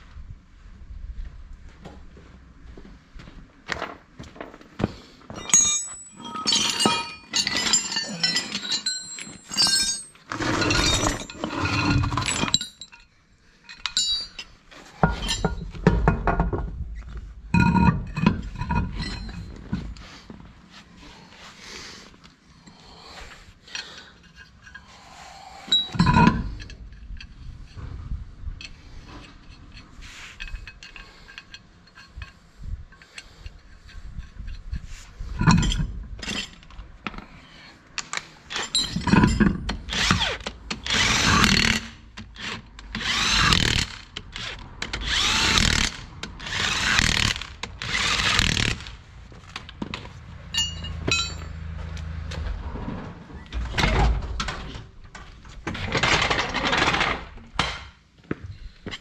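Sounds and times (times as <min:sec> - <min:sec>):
metal parts clicking and knocking: 0:05.4 - 0:16.8, 0:17.5 - 0:20.0, 0:25.7 - 0:27.8, 0:28.6 - 0:37.2, 0:38.0 - 0:51.6, 0:53.5 - 0:58.0
hand-held power tool bursts: 0:39.9 - 0:48.9.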